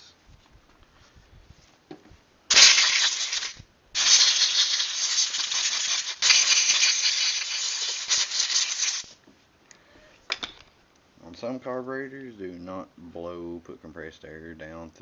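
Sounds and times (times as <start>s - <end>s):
compressed air blow gun hissing: 2.5s - 9.2s.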